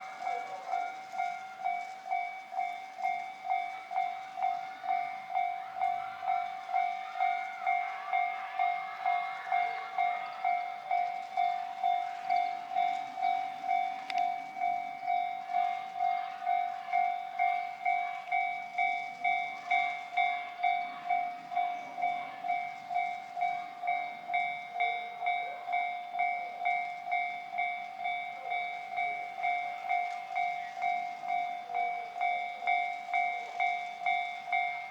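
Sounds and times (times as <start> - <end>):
faint rail and engine rumble: 0.0 - 34.9
level-crossing alarm dinging: 0.0 - 34.9.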